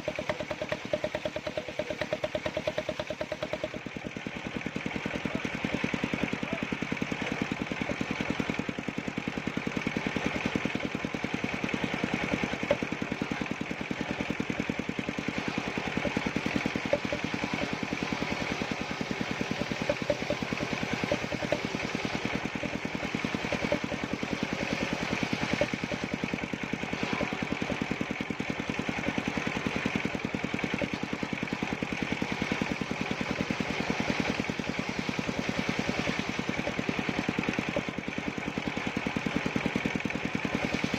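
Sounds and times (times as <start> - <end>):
machine engine running steadily: 0.0 - 40.9.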